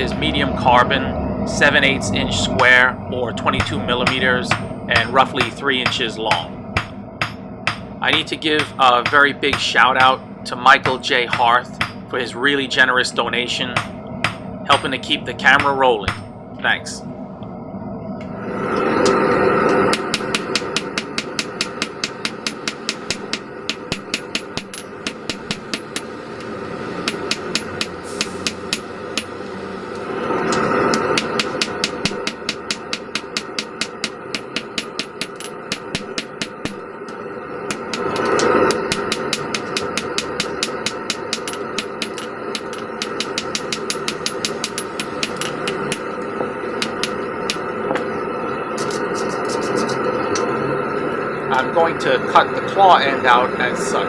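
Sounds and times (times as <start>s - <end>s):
steady background hum: 0.0s - 54.0s
hammer blows on hot steel: 3.4s - 12.6s, 13.4s - 16.4s, 19.0s - 26.2s, 27.0s - 29.6s, 30.4s - 48.1s.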